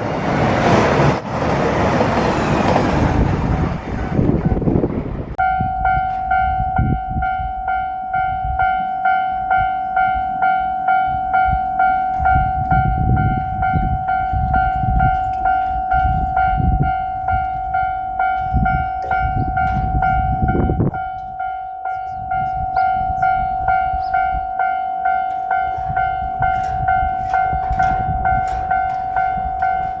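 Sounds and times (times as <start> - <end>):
diesel train rumbling: 0.0 - 30.0
level-crossing warning bell ringing: 5.4 - 30.0.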